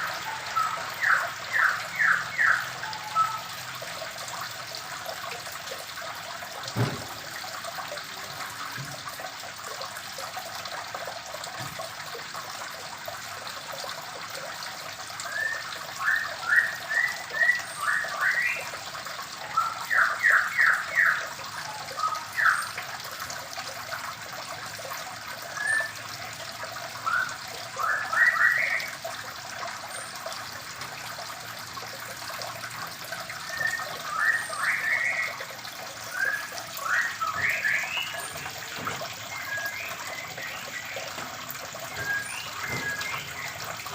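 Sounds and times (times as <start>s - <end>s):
birds chirping: 0.0s - 3.5s, 36.0s - 43.9s
water trickling: 0.0s - 43.9s
thump: 6.8s - 7.2s.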